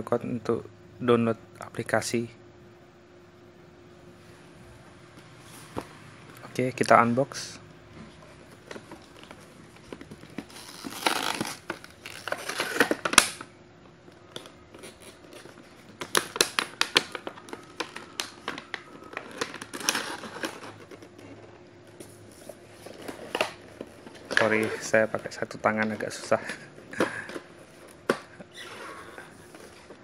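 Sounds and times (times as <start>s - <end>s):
packaging crinkling and rustling: 8.4s - 30.0s.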